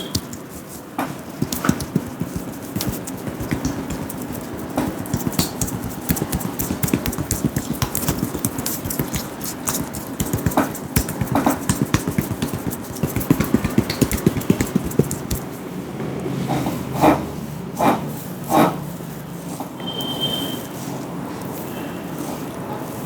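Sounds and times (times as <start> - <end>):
hands tapping on head: 0.0 - 0.6, 1.3 - 15.5.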